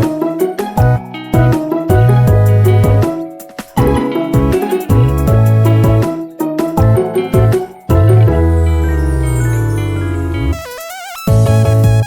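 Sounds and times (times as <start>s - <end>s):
sliding bass line: 0.8s - 3.2s, 3.8s - 10.6s, 11.3s - 12.0s
synthesized chord with mallet tones: 3.8s - 10.6s.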